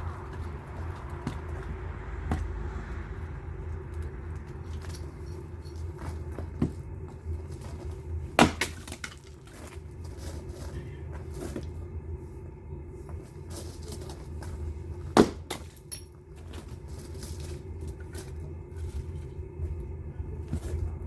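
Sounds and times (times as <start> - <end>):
steady low hum: 0.0 - 21.0
firewood knocking and cracking: 5.8 - 10.4, 15.1 - 16.9.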